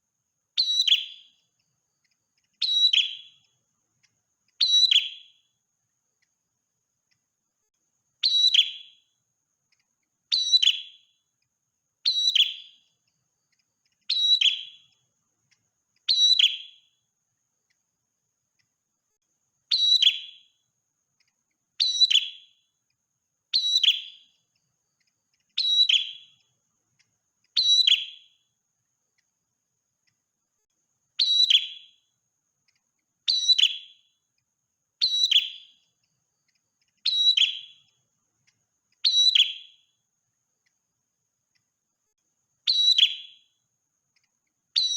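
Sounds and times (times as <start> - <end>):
songbird high ringing call: 0.5 - 3.6, 4.4 - 5.6, 8.2 - 11.2, 12.0 - 15.1, 15.9 - 17.0, 19.6 - 20.6, 21.8 - 22.7, 23.5 - 28.6, 31.1 - 32.1, 32.7 - 34.2, 35.0 - 38.1, 38.9 - 40.0, 42.6 - 43.6.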